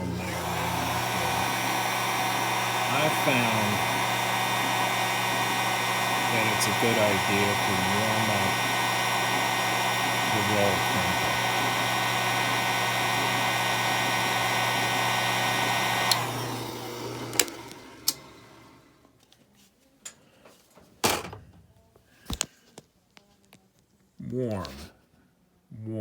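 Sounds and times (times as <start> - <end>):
drill press motor running: 0.0 - 19.0.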